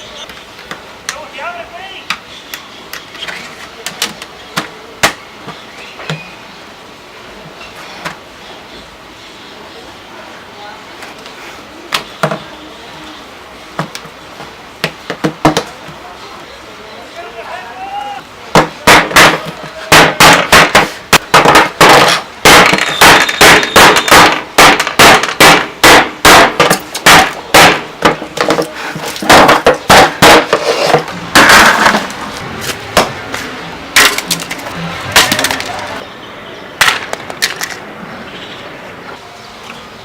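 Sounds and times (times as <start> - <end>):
loud hard smashing blows: 18.5 - 32.1, 34.0 - 36.0.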